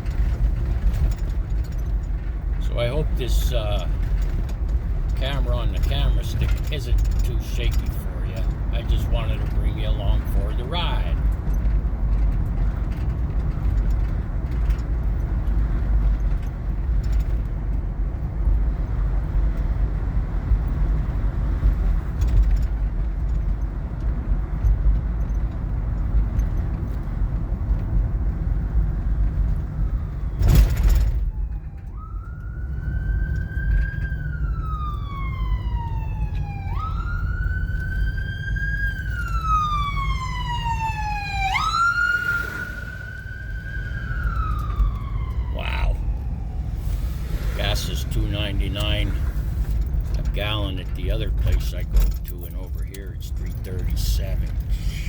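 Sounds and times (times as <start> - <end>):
car road and engine rumble: 0.0 - 55.0
emergency siren wailing: 29.8 - 30.5, 31.2 - 49.3.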